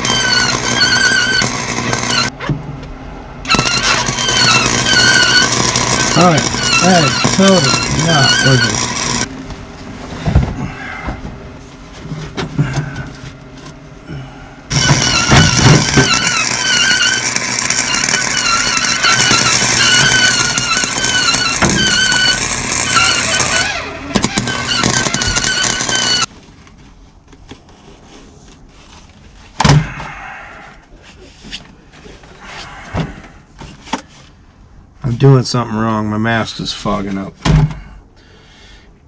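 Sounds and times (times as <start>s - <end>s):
welding arc crackling hiss: 0.0s - 2.3s, 3.5s - 9.3s, 14.7s - 26.3s.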